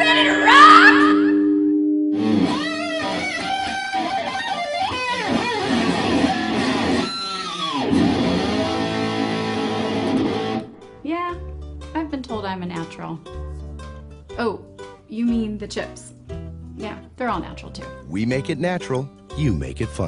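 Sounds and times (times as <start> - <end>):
electric guitar playing rock: 0.0 - 11.3.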